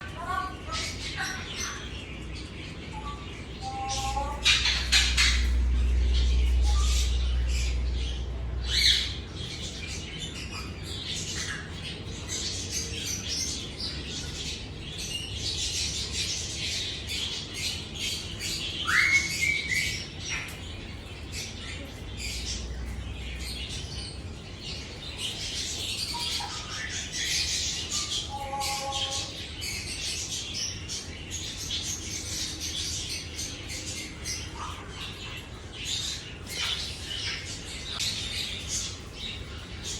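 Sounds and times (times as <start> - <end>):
parrot squawking and chirping: 0.1 - 2.0, 2.7 - 11.8, 18.2 - 20.6, 22.3 - 30.8.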